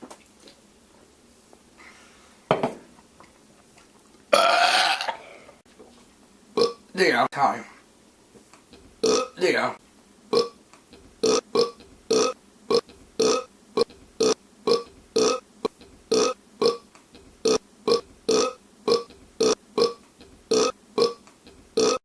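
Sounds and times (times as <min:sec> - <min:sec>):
man burping: 0:04.4 - 0:05.3, 0:06.6 - 0:06.8, 0:09.0 - 0:09.4, 0:10.3 - 0:10.6, 0:11.2 - 0:15.4, 0:16.1 - 0:16.8, 0:17.4 - 0:21.2, 0:21.8 - 0:22.0.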